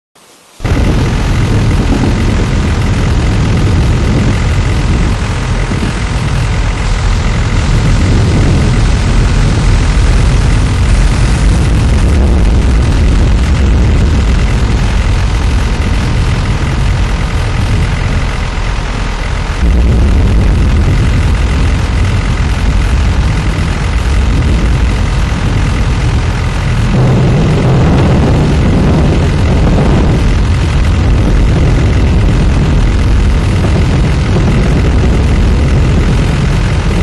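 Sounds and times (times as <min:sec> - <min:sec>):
strong wind roaring: 0:00.4 - 0:37.0.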